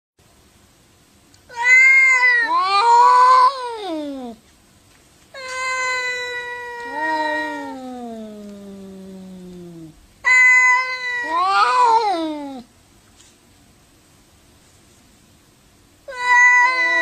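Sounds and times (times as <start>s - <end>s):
cats meowing in long calls: 1.5s - 4.4s, 5.3s - 12.7s, 16.1s - 17.0s.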